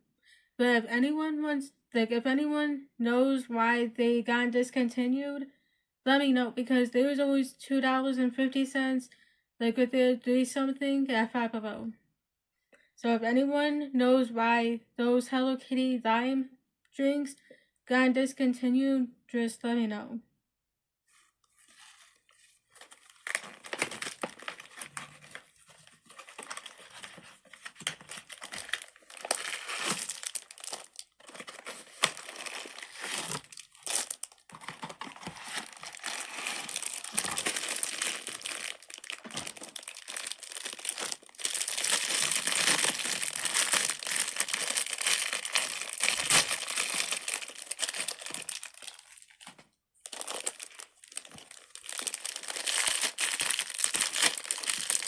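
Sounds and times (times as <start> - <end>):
crinkly packaging being torn open: 22.8 - 55.0.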